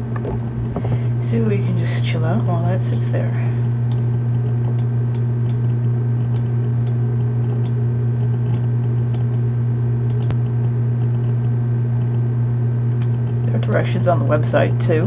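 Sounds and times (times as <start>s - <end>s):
steady low hum: 0.0s - 15.0s
faint clicks: 10.1s - 10.4s.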